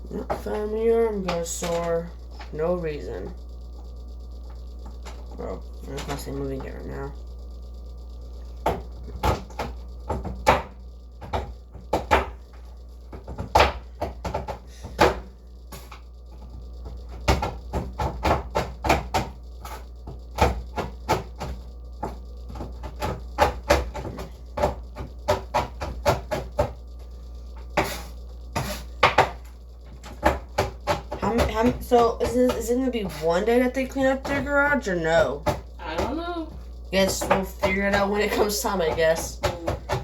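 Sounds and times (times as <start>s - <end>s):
steady low hum: 0.0s - 40.0s
knife chopping on cutting board: 8.6s - 12.4s, 13.1s - 15.9s, 16.8s - 26.8s, 27.8s - 29.4s, 30.0s - 33.2s, 37.0s - 40.0s.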